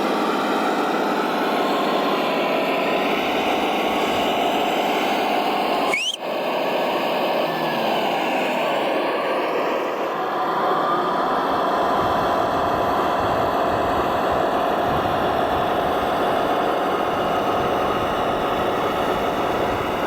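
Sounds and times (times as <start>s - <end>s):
electric motors whining: 5.9s - 6.2s.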